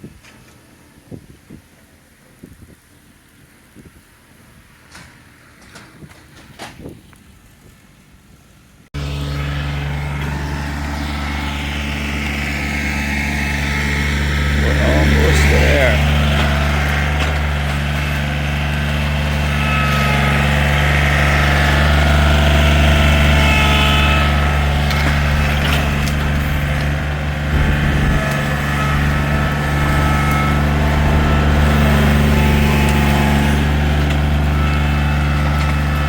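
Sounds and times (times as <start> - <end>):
engine knocks: 9.0 - 36.0
large engine humming: 9.0 - 36.0.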